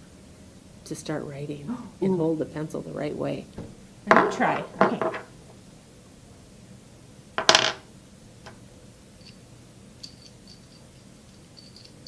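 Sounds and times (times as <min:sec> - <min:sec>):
metal nuts and bolts clinking: 0:09.2 - 0:12.0.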